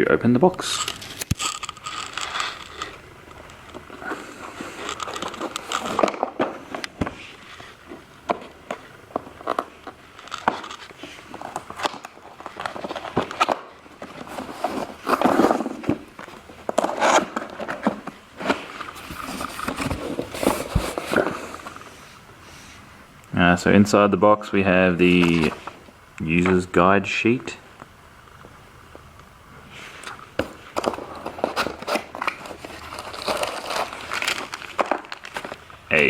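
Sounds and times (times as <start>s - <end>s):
cardboard box scraping and rustling: 14.1s - 16.0s, 16.6s - 21.8s, 30.8s - 34.4s.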